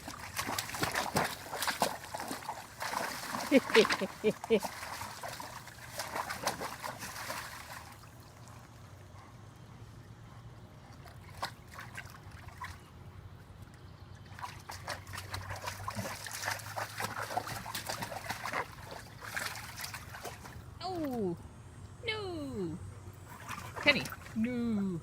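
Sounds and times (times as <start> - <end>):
dog splashing in water: 0.0 - 8.2, 10.9 - 12.8, 14.3 - 21.1, 23.3 - 24.4.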